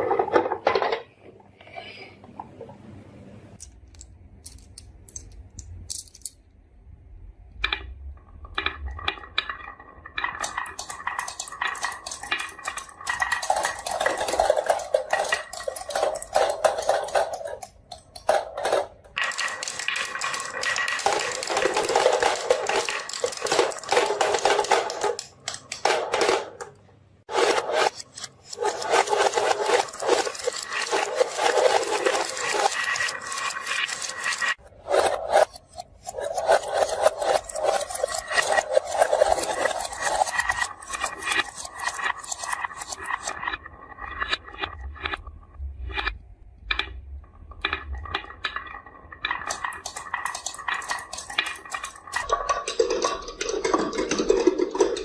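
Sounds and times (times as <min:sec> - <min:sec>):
marbles clattering down wooden run: 0:08.5 - 0:26.6, 0:27.3 - 0:45.1, 0:47.6 - 0:55.0.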